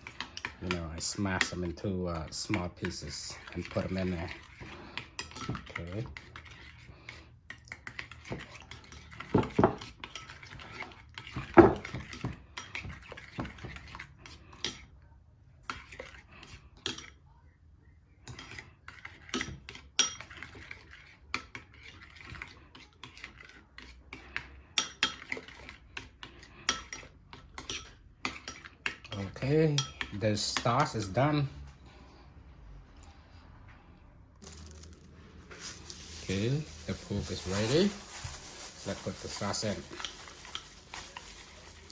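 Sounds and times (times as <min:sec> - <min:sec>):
spoon clinking against bowl: 0:19.4 - 0:20.4, 0:29.7 - 0:30.7.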